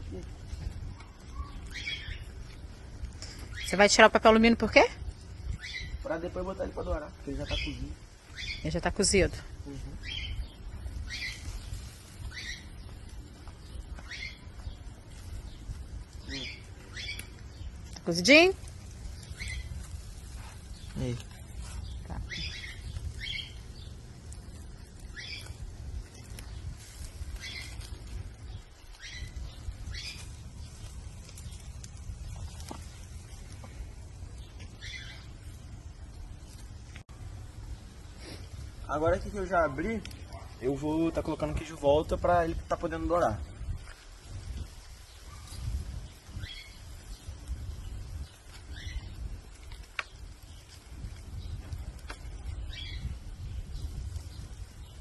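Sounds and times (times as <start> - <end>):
steady low rumble: 0.0 - 55.0
bird chirping: 0.8 - 4.7, 5.5 - 6.2, 7.2 - 9.3, 9.9 - 25.6, 26.2 - 36.7, 52.4 - 55.0.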